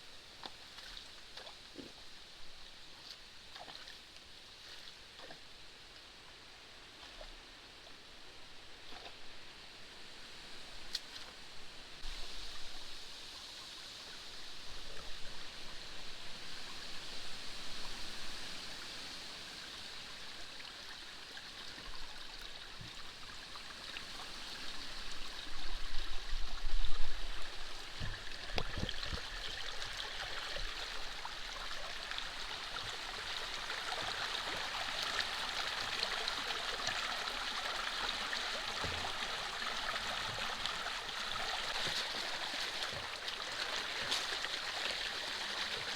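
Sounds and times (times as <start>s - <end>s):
water rushing and splashing: 14.0s - 45.9s.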